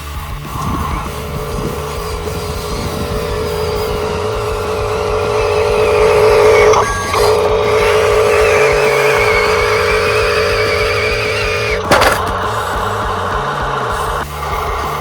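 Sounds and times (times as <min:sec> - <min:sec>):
small electric motor whining: 0:00.0 - 0:15.0.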